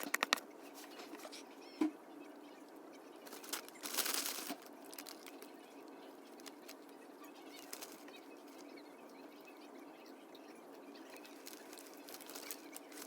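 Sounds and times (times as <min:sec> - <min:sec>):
rustling: 0:03.3 - 0:05.5, 0:07.5 - 0:08.1, 0:11.2 - 0:13.0
food crunching and nibbling: 0:03.3 - 0:08.7, 0:11.0 - 0:13.0.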